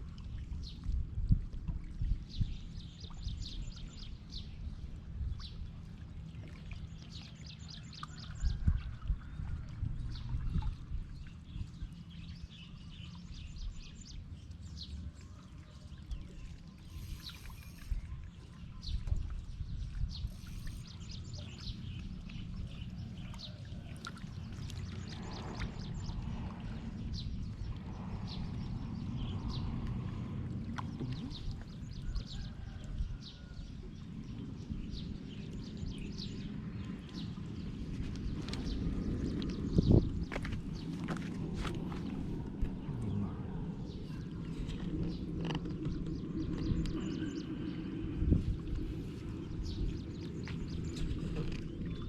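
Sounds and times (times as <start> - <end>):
steady low rumble: 0.0 - 52.0
small birds chirping: 15.6 - 19.1, 20.1 - 26.2.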